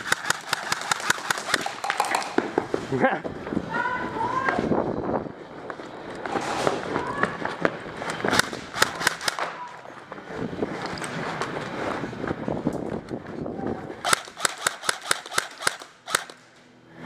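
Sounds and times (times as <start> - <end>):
airsoft guns firing: 0.0 - 2.6, 8.3 - 9.7, 14.0 - 16.5.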